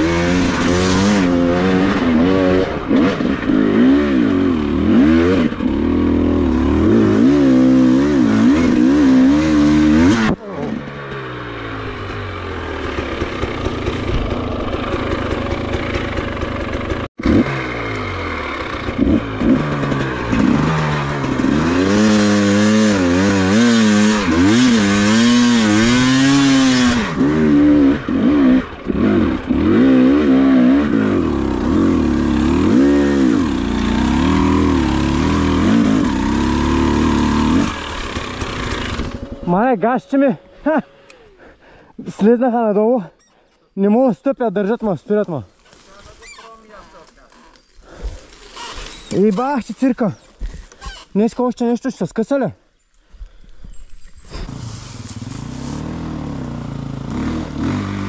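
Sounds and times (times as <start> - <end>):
dirt bike engine revving: 0.0 - 42.3, 54.3 - 58.0.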